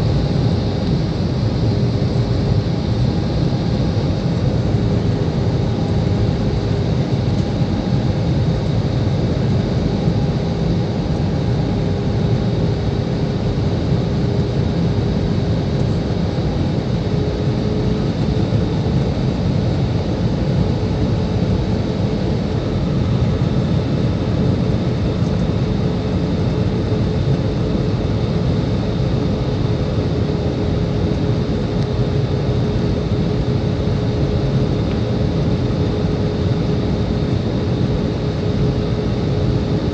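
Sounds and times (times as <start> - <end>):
faint steady hum: 0.0 - 39.9
jet engine drone: 0.0 - 39.9.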